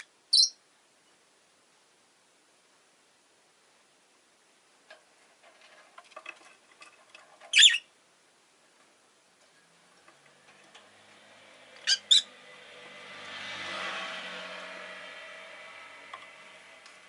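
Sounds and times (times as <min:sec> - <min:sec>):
lovebird chattering and calling: 0:00.0 - 0:00.6, 0:07.5 - 0:07.9, 0:11.8 - 0:12.3
shrill bird calls: 0:00.0 - 0:00.6, 0:07.5 - 0:07.9, 0:11.8 - 0:12.3
traffic noise: 0:09.5 - 0:17.0.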